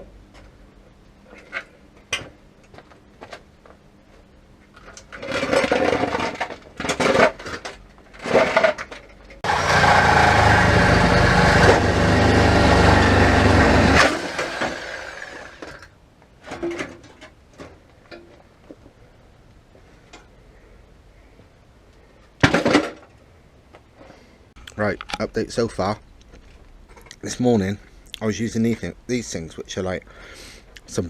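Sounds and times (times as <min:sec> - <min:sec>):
reciprocating saw cutting steel: 0:09.4 - 0:15.8.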